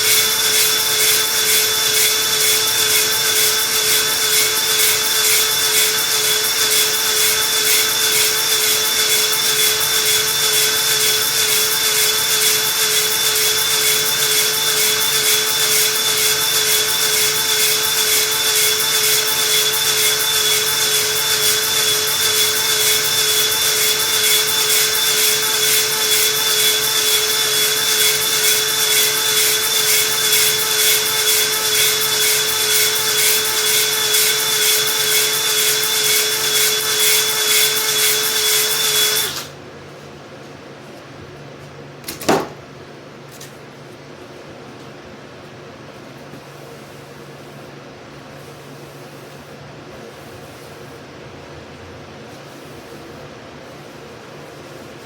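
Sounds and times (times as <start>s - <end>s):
electric drill motor whine: 0.0s - 39.5s.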